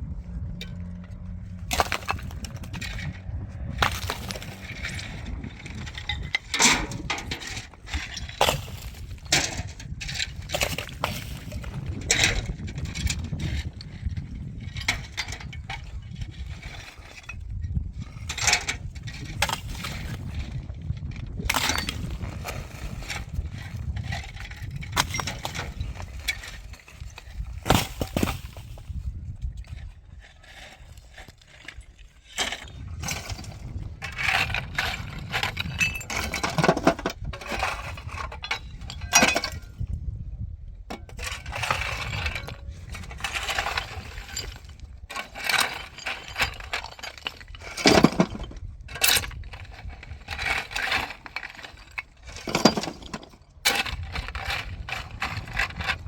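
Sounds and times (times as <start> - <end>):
low rumble: 0.0 - 6.6
hard objects knocking and clinking: 3.7 - 13.8.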